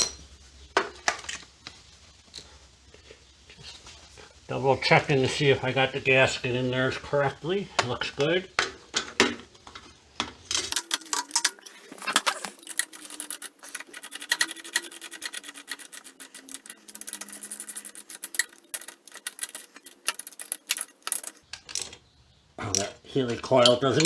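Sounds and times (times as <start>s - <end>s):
hand ratchet clicking: 10.7s - 21.4s.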